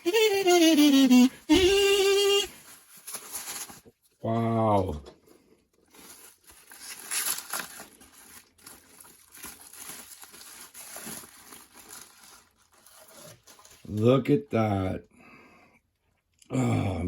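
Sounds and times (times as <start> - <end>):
packaging crinkling: 1.4 - 4.0, 5.8 - 14.0.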